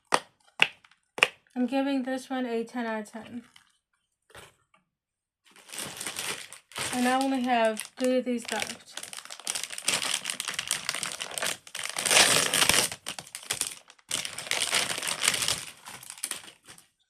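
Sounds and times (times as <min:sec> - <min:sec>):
plastic packaging crinkling: 0:05.5 - 0:16.9.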